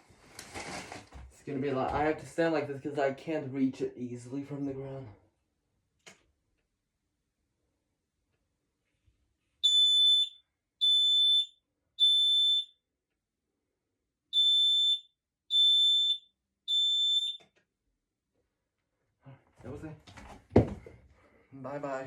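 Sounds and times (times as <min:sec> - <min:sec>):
smoke alarm beeps: 0:09.6 - 0:12.8, 0:14.3 - 0:17.5.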